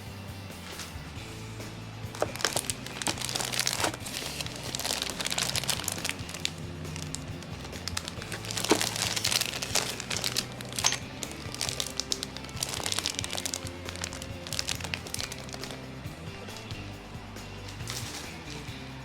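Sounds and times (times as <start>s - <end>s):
background music with low notes: 0.0s - 19.0s
packaging crinkling and rustling: 2.2s - 15.8s.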